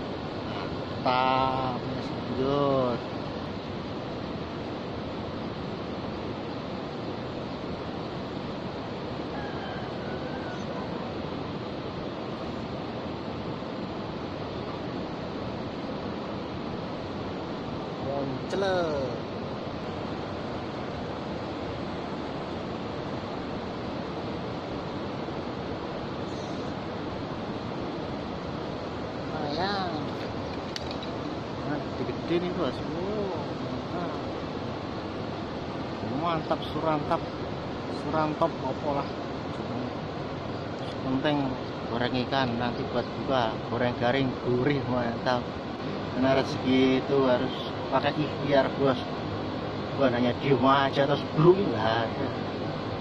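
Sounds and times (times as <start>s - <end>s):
river flowing over stones: 10.8s - 53.0s.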